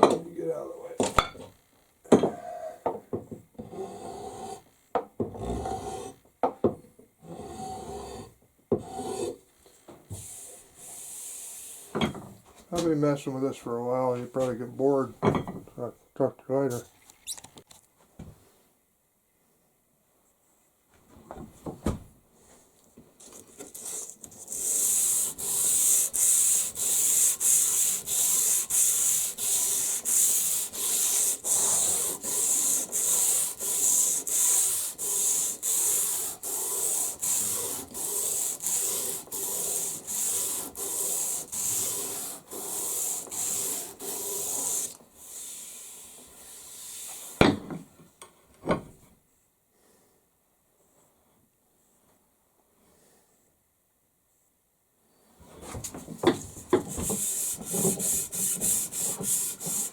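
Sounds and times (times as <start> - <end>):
rasping on wooden handle: 7.3 - 9.4, 23.8 - 45.0, 56.2 - 59.9.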